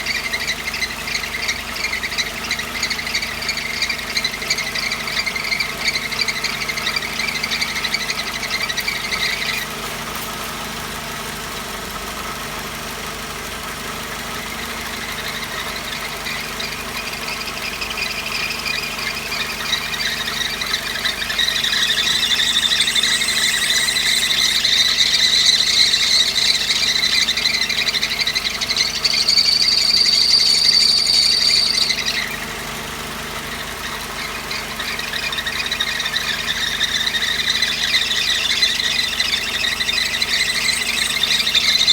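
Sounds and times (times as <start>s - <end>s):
car engine idling: 0.0s - 41.9s
drive belt squealing: 0.0s - 41.9s.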